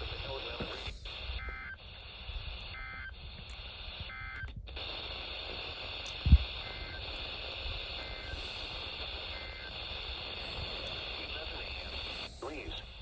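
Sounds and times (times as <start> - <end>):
radio static hiss: 0.0 - 13.0
warbling data tones: 0.0 - 13.0.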